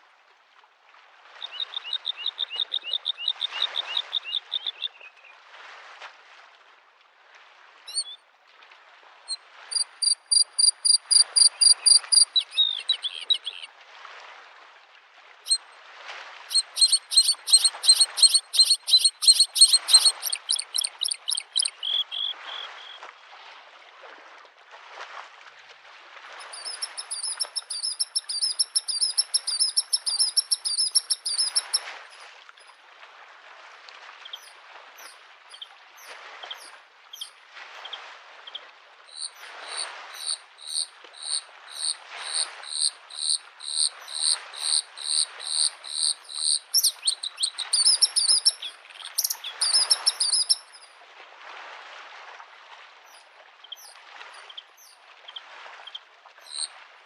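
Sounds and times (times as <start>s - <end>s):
lake waves washing on shore: 0.0s - 57.0s
bird singing high ringing notes: 9.7s - 13.6s, 26.6s - 31.8s.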